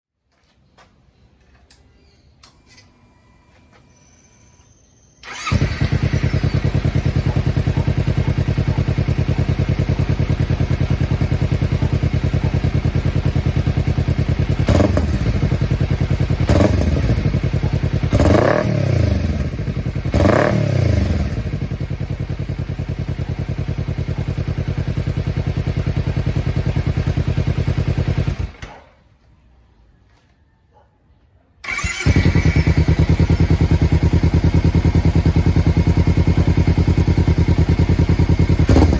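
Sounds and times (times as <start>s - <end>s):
motorcycle engine idling and revving: 5.2s - 29.0s, 31.6s - 38.9s.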